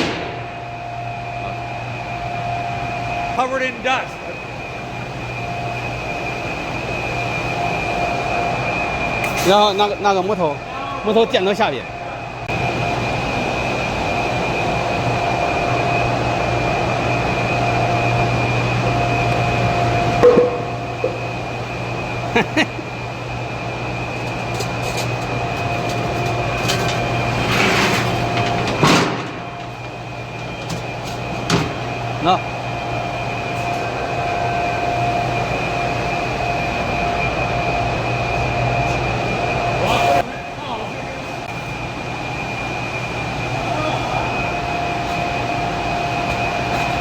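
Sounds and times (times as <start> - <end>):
machine hum with high whine: 0.0 - 47.0.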